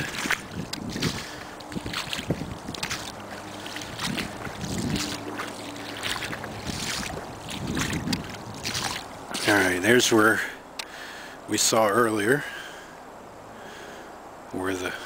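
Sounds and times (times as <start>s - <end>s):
footsteps splashing through water: 0.0s - 9.9s.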